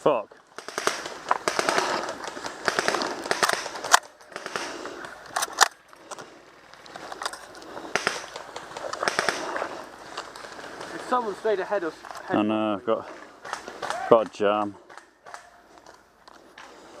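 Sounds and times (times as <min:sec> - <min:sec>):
airsoft gunfire cracks: 0:00.6 - 0:04.9, 0:07.9 - 0:08.4, 0:09.0 - 0:09.6.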